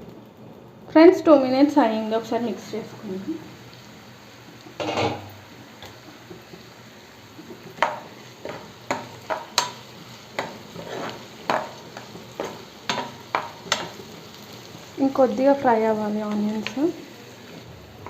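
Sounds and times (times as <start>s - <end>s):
onions sizzling in oil: 0.0s - 18.0s
spatula scraping pan: 4.8s - 5.3s, 10.4s - 14.0s.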